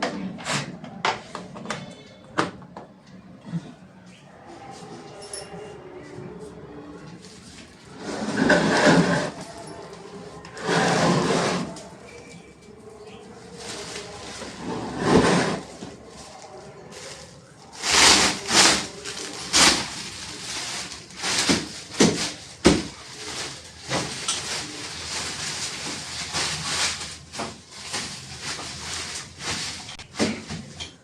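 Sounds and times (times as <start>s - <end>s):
plastic wrapping crinkling: 9.3s - 30.5s.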